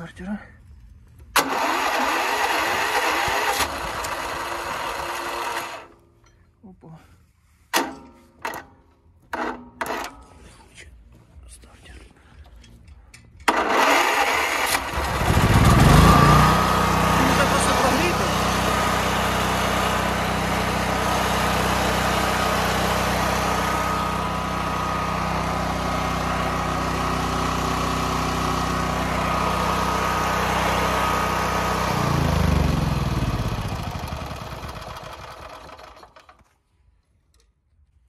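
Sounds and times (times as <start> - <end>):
generator engine running: 1.2 - 6.0, 13.4 - 36.3.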